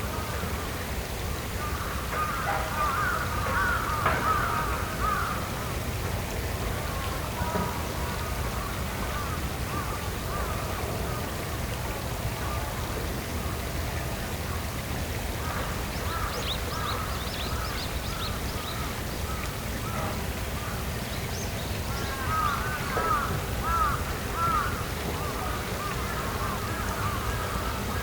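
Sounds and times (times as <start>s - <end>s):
birds calling: 1.6s - 5.4s, 15.4s - 28.0s.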